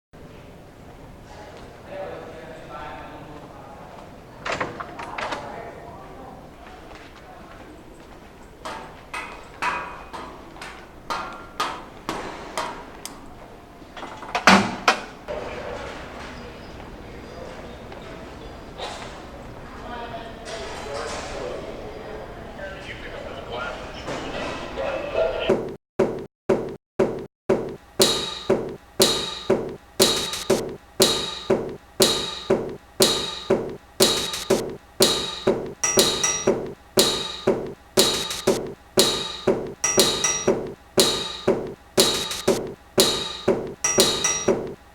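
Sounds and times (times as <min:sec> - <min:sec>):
hard-soled footsteps on floor: 0:25.5 - 0:44.8
loud knocks: 0:25.5 - 0:44.8.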